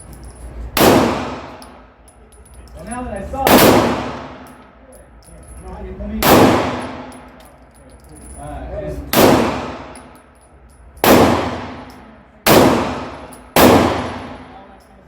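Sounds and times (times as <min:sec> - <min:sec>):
pistol shots with ringing: 0:00.8 - 0:01.9, 0:03.4 - 0:04.6, 0:06.2 - 0:07.4, 0:09.1 - 0:10.3, 0:11.0 - 0:14.6.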